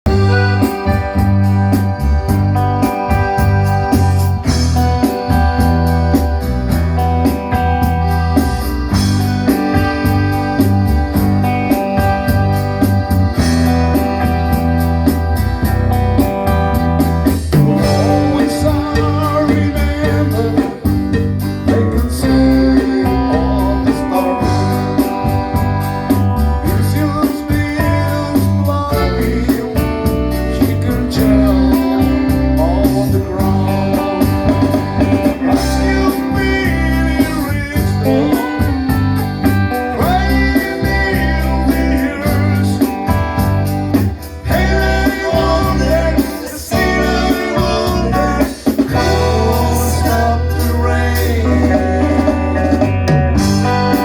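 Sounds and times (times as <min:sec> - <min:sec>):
bass: 0:00.0 - 0:54.0
guitar: 0:00.0 - 0:54.0
steady drum beat: 0:00.0 - 0:54.0
person singing: 0:17.5 - 0:54.0.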